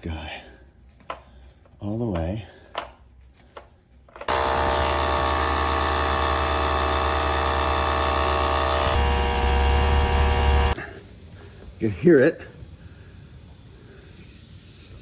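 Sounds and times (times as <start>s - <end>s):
tire pump motor drone: 4.3s - 11.8s.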